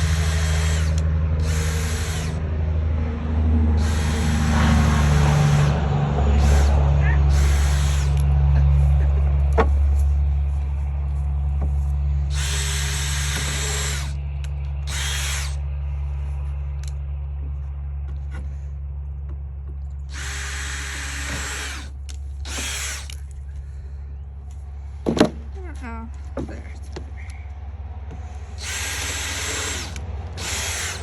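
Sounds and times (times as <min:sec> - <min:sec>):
power drill drilling into wood: 0:00.0 - 0:02.4, 0:03.8 - 0:08.2, 0:12.3 - 0:14.2, 0:14.9 - 0:15.6, 0:20.1 - 0:23.2, 0:28.6 - 0:31.0
steady low hum: 0:00.0 - 0:31.0.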